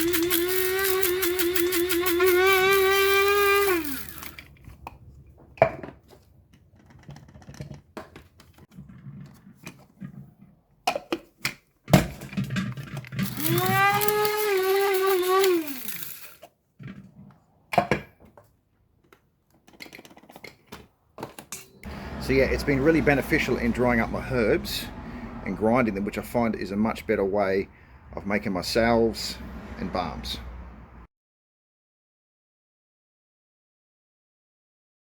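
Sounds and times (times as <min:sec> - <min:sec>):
coffee grinder motor whine: 0:00.0 - 0:04.5, 0:13.2 - 0:16.4, 0:21.8 - 0:24.4.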